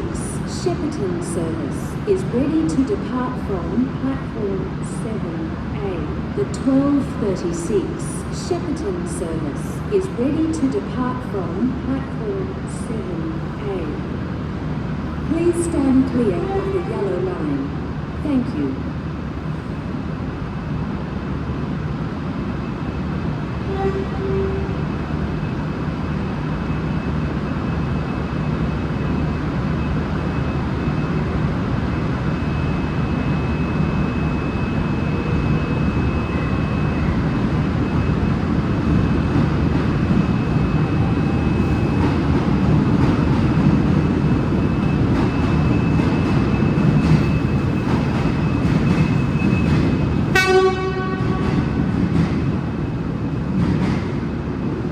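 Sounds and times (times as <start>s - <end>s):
train diesel engines rumbling: 0.0s - 54.9s.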